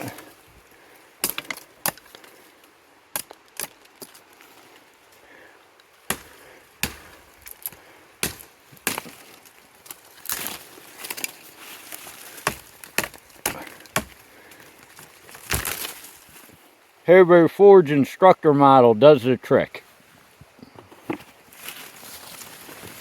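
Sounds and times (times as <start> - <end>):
knife chopping branches: 1.2 - 2.4, 3.1 - 4.2, 6.0 - 14.7, 15.3 - 16.1.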